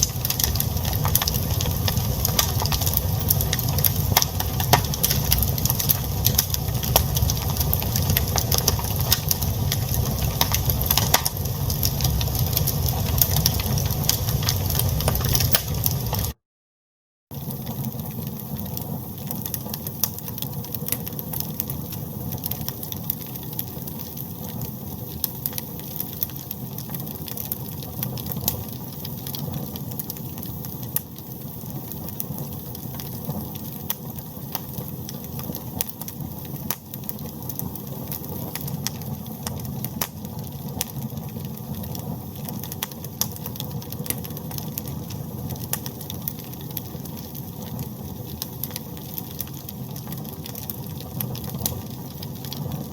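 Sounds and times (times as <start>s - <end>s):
wood fire crackling: 0.0s - 16.4s, 17.3s - 52.9s.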